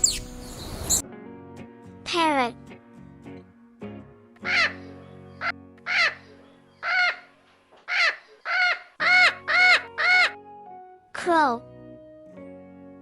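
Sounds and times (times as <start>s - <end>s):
light background music: 0.0s - 13.0s
parrot squawking: 4.4s - 4.8s, 7.9s - 10.4s.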